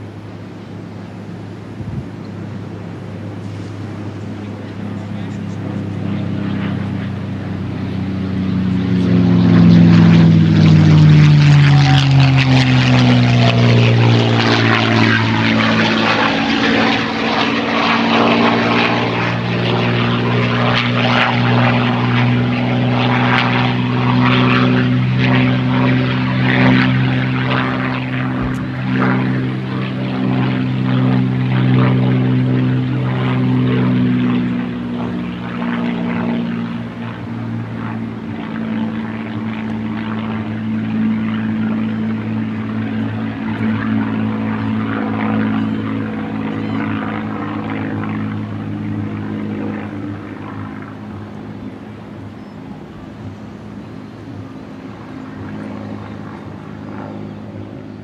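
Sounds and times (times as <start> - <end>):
propeller plane engine flying past: 0.0 - 58.0.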